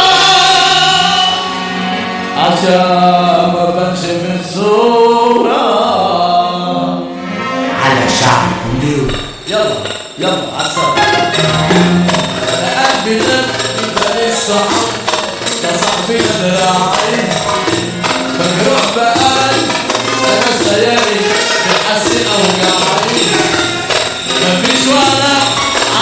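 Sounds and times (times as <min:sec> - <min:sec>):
electronic dance music with steady beat: 0:07.9 - 0:26.0.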